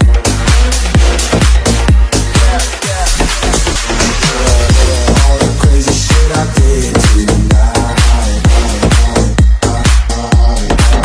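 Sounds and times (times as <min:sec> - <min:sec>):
electronic dance music: 0:00.0 - 0:11.0
sustained synth chords: 0:00.0 - 0:11.0
thumping kick drum: 0:00.0 - 0:11.0.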